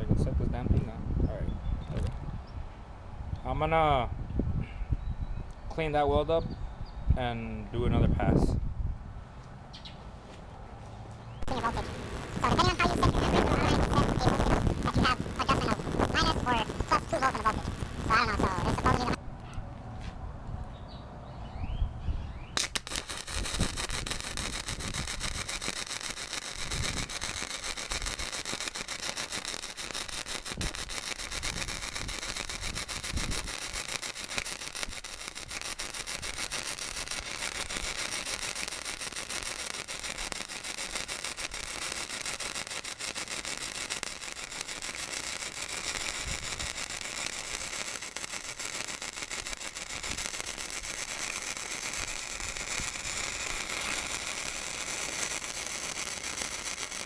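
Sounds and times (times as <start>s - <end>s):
crackling welding arc: 11.4s - 19.2s, 22.6s - 57.0s.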